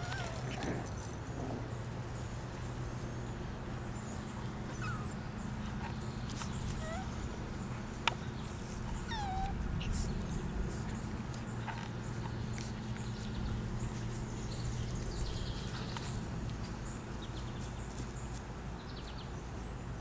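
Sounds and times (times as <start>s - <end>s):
puppies whimpering: 0.0s - 0.9s, 4.6s - 5.2s, 5.9s - 7.6s, 8.9s - 10.2s
steady low hum: 0.0s - 20.0s.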